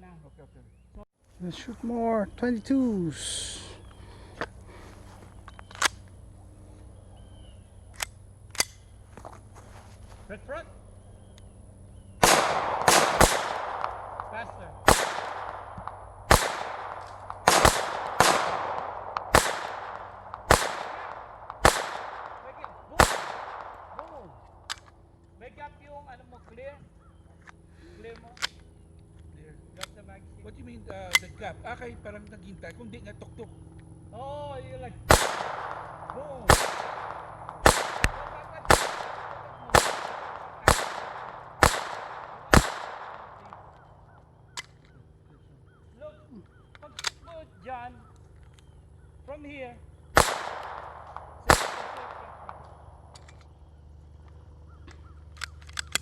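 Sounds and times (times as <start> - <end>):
pistol shots with echo: 12.2 - 24.9, 35.1 - 44.9, 50.0 - 53.9.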